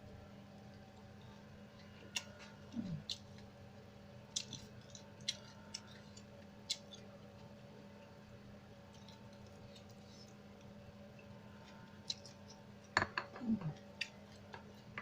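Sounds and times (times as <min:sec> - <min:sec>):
faint low hum: 0:00.0 - 0:15.0
chewing: 0:01.0 - 0:03.6, 0:04.3 - 0:07.1, 0:08.9 - 0:15.0.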